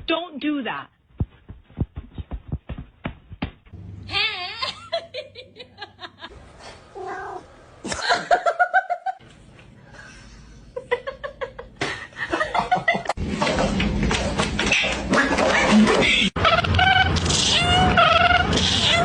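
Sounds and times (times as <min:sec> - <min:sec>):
person laughing: 0:04.1 - 0:06.3, 0:07.8 - 0:09.2
cat yowling: 0:07.0 - 0:07.5, 0:16.4 - 0:19.0.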